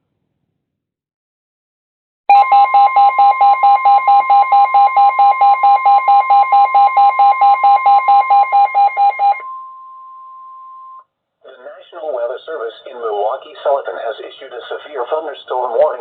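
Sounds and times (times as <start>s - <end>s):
pulsing alarm beeps: 2.3s - 11.0s
steady warning alarm tone: 2.3s - 11.0s.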